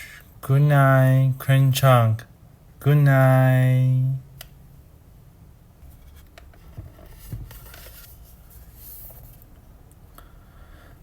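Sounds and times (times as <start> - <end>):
paper rustling: 7.0 - 9.5.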